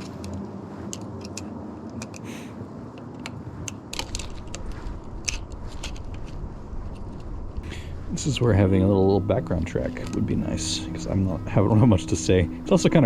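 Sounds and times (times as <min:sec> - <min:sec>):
bicycle cables and tools rattling: 0:00.0 - 0:13.0
steady low hum: 0:00.0 - 0:13.0.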